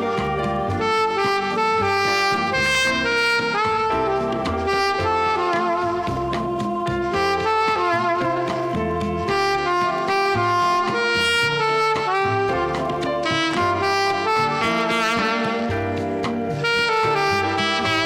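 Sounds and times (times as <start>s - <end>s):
alto saxophone slow melody: 0.0s - 18.0s
bass line: 0.0s - 18.0s
drums: 0.0s - 18.0s.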